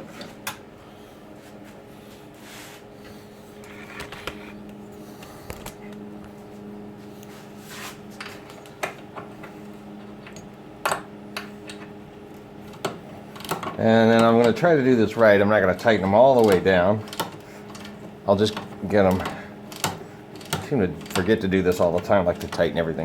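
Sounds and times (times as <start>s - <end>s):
steady low hum: 0.0s - 23.0s
tools being handled clicking: 19.1s - 21.3s.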